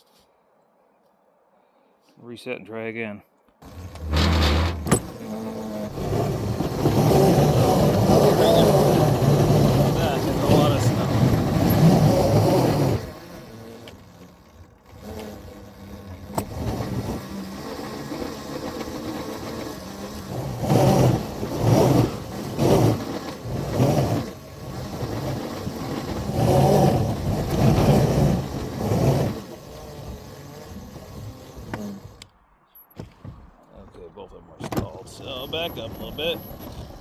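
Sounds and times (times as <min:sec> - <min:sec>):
locomotives rhythmic pulsing: 0:03.6 - 0:14.3.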